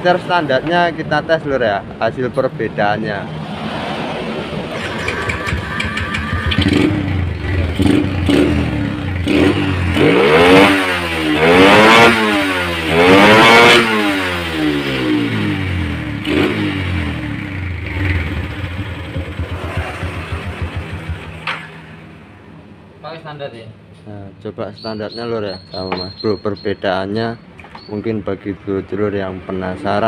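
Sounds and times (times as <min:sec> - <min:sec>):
motorcycle engine revving: 0:03.6 - 0:22.2.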